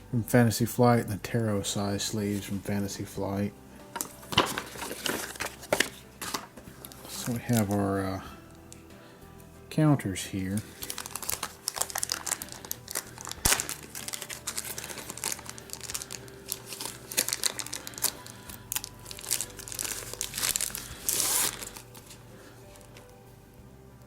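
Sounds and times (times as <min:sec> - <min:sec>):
plastic wrapping crinkling: 0:03.9 - 0:08.8, 0:10.5 - 0:23.1.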